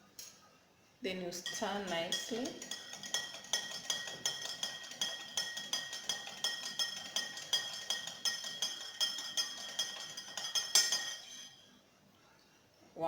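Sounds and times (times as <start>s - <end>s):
spoon clinking in cup: 1.4s - 11.6s.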